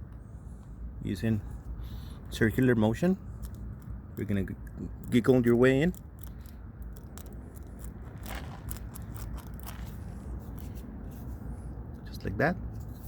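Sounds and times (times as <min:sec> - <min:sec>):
low steady rumble: 0:00.0 - 0:13.0
steel tool scraping rubber: 0:05.1 - 0:11.3.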